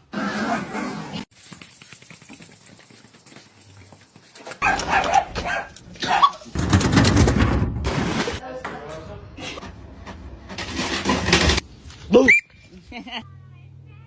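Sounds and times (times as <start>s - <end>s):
dog barking: 4.6s - 6.4s.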